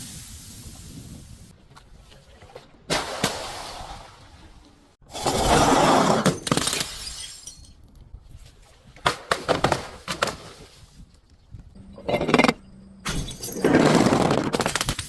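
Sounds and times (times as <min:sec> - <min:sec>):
glass bottle shattering: 0:06.2 - 0:07.8, 0:13.0 - 0:14.0
glass pieces crunching and clinking: 0:06.4 - 0:07.8, 0:12.1 - 0:15.0
sharp cracks of glass: 0:14.4 - 0:15.0.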